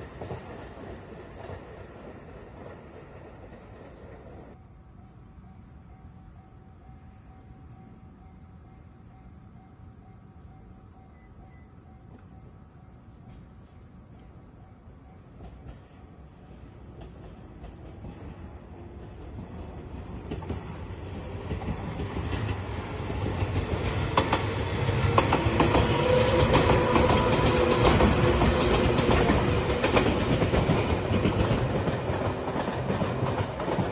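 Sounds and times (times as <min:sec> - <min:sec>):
electric train passing: 0:00.0 - 0:33.9.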